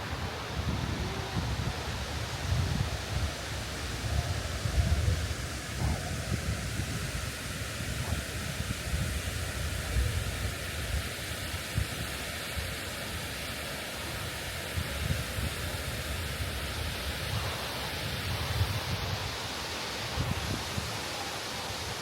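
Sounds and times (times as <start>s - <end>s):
wind buffeting microphone: 0.0s - 11.1s.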